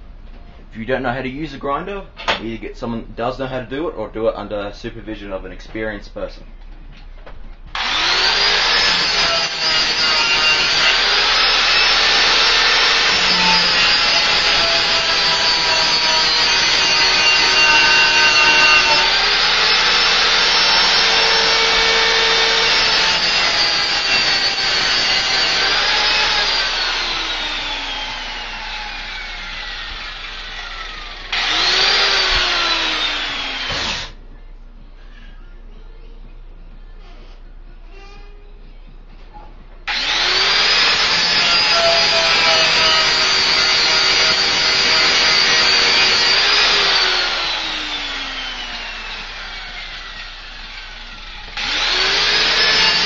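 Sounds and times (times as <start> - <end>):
angle grinder whining: 7.7 - 34.2, 39.9 - 53.0
grinder spinning down: 7.8 - 34.2, 39.9 - 53.0.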